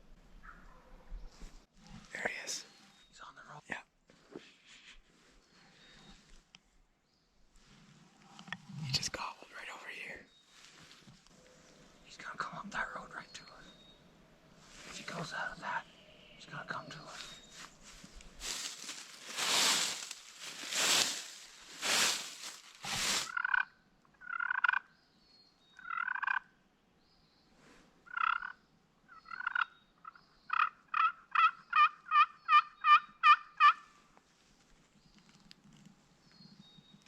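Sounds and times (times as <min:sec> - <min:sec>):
rustling scratches in dry leaves: 0:17.0 - 0:23.4
turkey gobble: 0:30.5 - 0:33.9
turkey yelping calls: 0:30.5 - 0:33.9.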